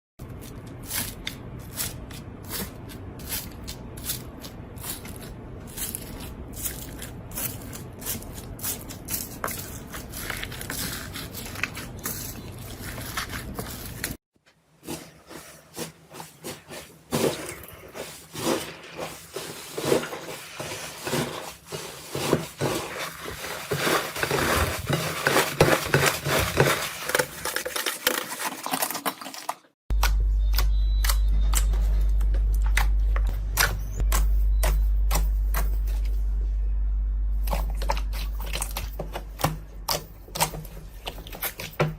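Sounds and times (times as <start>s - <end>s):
steady low hum: 29.9s - 41.9s.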